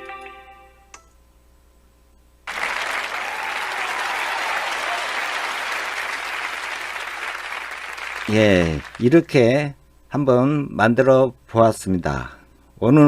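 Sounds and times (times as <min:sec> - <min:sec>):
crowd clapping: 0:02.5 - 0:09.2.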